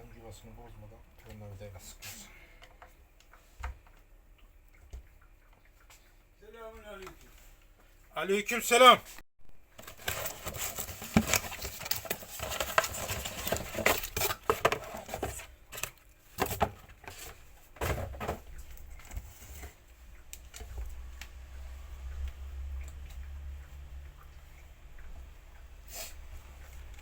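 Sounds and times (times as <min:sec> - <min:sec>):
small parts and tools clattering: 0:09.7 - 0:19.8.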